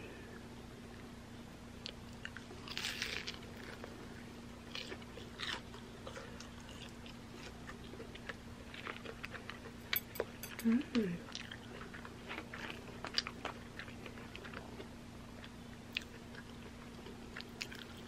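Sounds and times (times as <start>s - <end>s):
person chewing food: 1.8s - 10.7s, 11.3s - 18.0s
crisp crunches: 2.3s - 3.9s.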